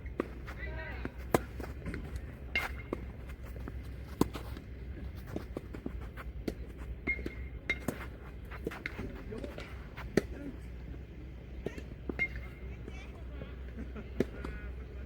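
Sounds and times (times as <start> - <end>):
tennis balls struck by rackets: 0.0 - 10.6, 11.5 - 12.7
tennis balls bouncing on court: 0.0 - 14.7.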